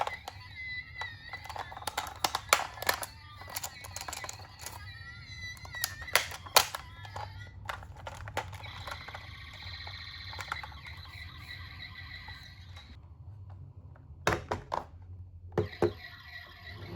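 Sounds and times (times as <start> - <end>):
plastic toy clicks and knocks: 0.0 - 11.0.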